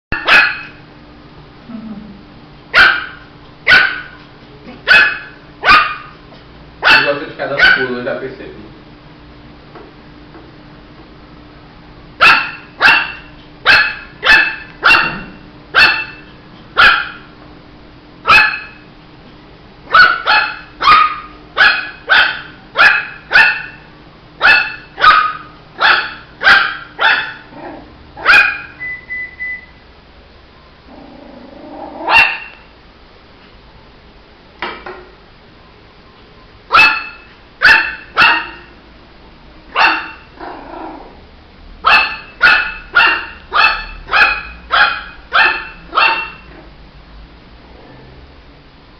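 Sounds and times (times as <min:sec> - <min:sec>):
puppy barking high yaps: 0:00.1 - 0:00.9, 0:02.7 - 0:06.2, 0:06.8 - 0:07.9, 0:12.2 - 0:17.3, 0:18.2 - 0:18.9, 0:19.9 - 0:27.6, 0:28.2 - 0:28.9, 0:32.0 - 0:32.7, 0:36.7 - 0:38.8, 0:39.7 - 0:40.4, 0:41.8 - 0:46.6.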